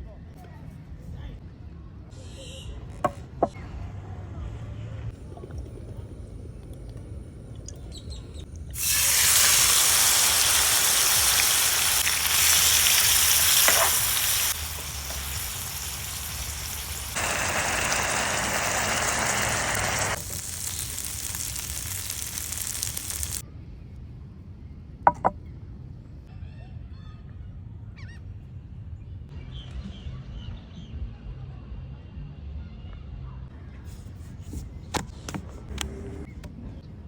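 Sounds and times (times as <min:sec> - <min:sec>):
meat sizzling: 0:08.8 - 0:23.4.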